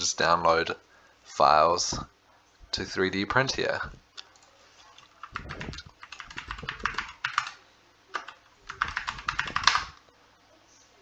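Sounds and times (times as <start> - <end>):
keyboard key clicks: 8.2 - 10.0.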